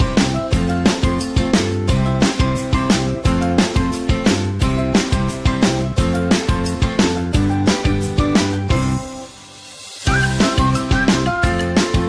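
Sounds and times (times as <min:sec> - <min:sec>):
upbeat guitar music with beat: 0:00.0 - 0:12.0.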